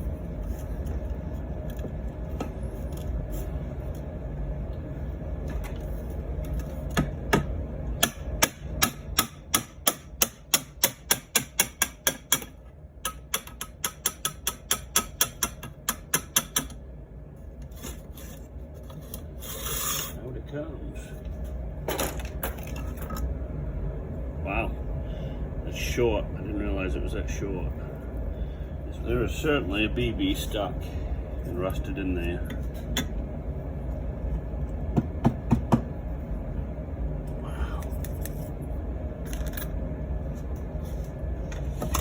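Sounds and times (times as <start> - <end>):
hammer tapping metal pipe: 7.3 - 16.8.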